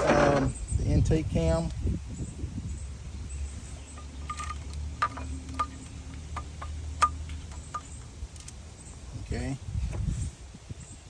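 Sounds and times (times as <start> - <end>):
metal tools tapping and clinking: 3.9 - 8.5.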